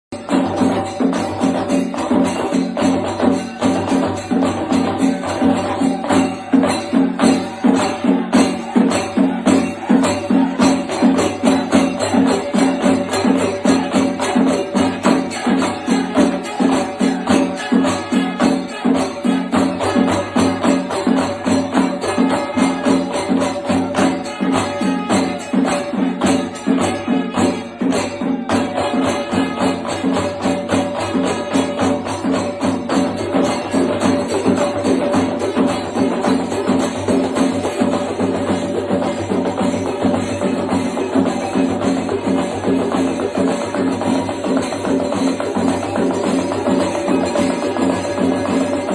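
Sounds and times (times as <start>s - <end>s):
pot drums beating: 0.1s - 48.9s
hand cymbals clashing: 0.2s - 48.9s.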